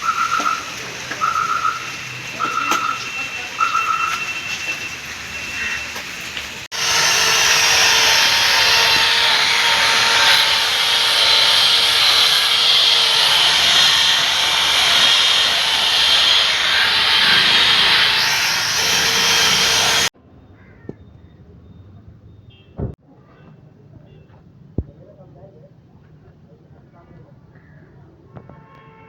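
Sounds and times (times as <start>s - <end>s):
power tool rasping: 6.7s - 20.1s.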